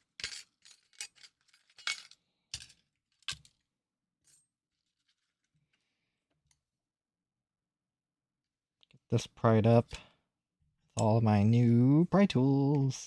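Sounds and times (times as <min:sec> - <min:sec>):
small hard parts clinking: 0:00.0 - 0:03.6.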